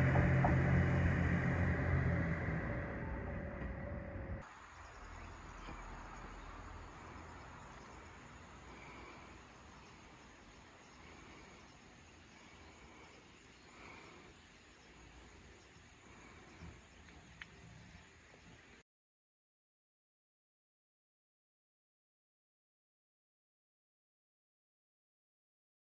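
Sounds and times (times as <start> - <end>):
faint low rumble: 0.0 - 18.8
high-pitched insect drone: 4.5 - 18.4.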